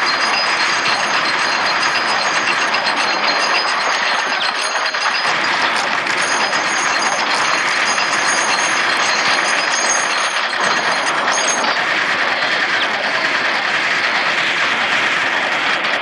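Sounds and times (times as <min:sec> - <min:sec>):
faint high ringing tones: 0:00.0 - 0:13.6.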